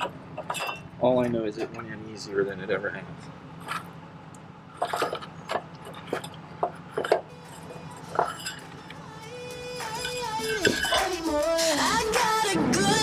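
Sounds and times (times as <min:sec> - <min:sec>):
metal hardware clinks and knocks: 0:00.0 - 0:02.0, 0:03.6 - 0:04.0, 0:04.7 - 0:09.0, 0:09.8 - 0:11.3
faint music: 0:07.0 - 0:13.0.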